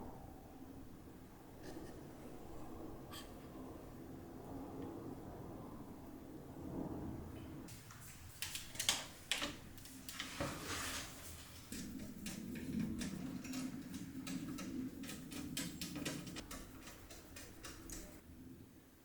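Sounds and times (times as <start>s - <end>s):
computer parts clicking: 8.4s - 10.2s, 11.7s - 18.2s.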